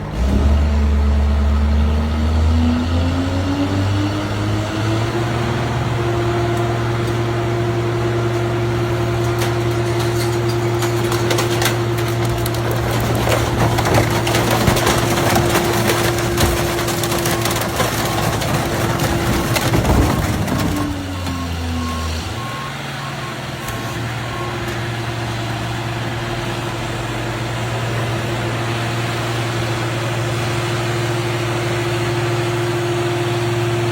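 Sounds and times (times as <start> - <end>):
heavy machine engine humming: 0.0 - 33.9
material cracking and snapping: 9.1 - 21.1
reversing alarm beeping: 20.8 - 25.0.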